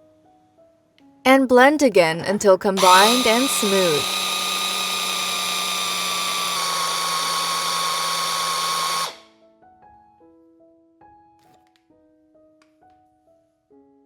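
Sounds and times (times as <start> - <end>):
blender motor whining: 2.8 - 9.3.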